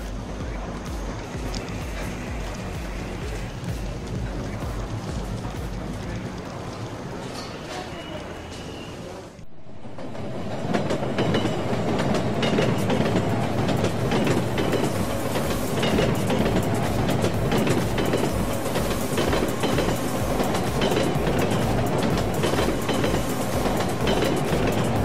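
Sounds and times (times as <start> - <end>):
train wheels clattering: 10.0 - 25.0.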